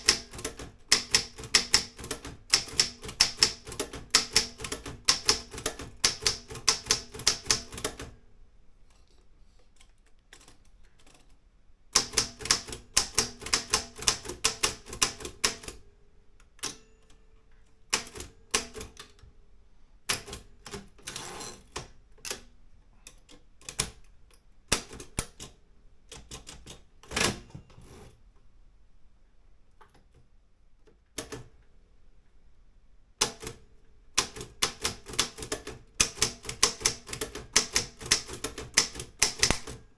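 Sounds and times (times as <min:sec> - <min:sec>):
typewriter key strikes: 0:00.0 - 0:08.1, 0:34.2 - 0:39.8.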